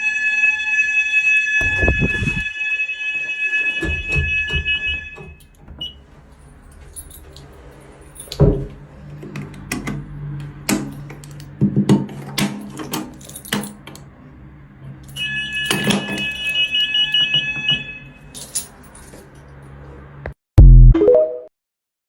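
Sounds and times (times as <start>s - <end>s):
fire alarm pulsing tone: 0.0s - 6.0s, 15.2s - 18.2s.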